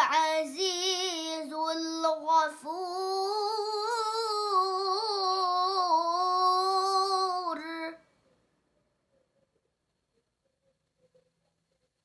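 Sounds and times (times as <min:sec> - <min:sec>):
girl reciting melodically: 0:00.0 - 0:08.1.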